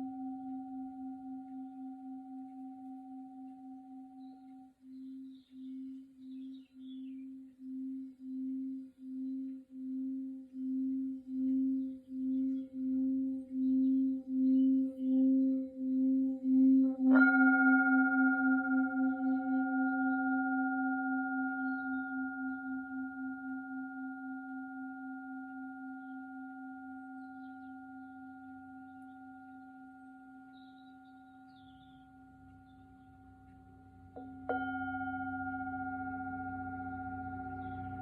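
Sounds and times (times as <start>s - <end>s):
singing bowl ringing: 0.0s - 38.0s.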